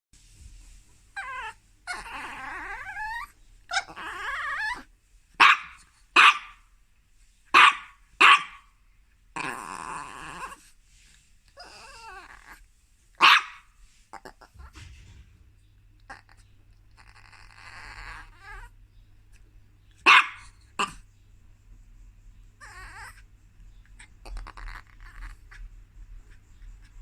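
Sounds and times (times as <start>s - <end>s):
small dog growling: 1.2s - 4.9s, 9.4s - 10.7s, 11.6s - 12.6s, 14.1s - 14.8s, 16.0s - 18.8s, 20.1s - 21.0s, 22.6s - 23.2s, 23.9s - 25.7s
small dog barking: 5.4s - 6.6s, 7.5s - 8.7s, 13.2s - 13.7s, 20.0s - 21.0s.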